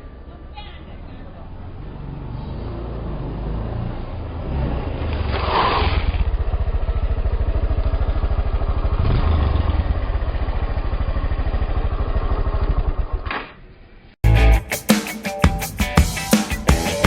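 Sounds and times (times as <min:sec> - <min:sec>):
motorcycle engine idling: 0:06.0 - 0:13.3.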